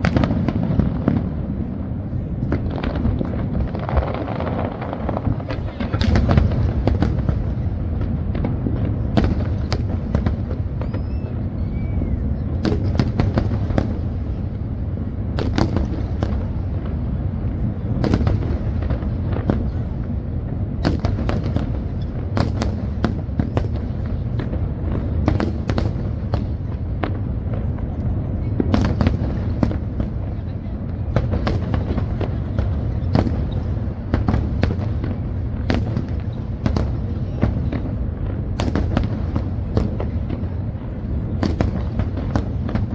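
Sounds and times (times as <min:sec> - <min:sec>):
fireworks booming: 0:00.0 - 0:42.9
fireworks cracking: 0:00.0 - 0:42.9.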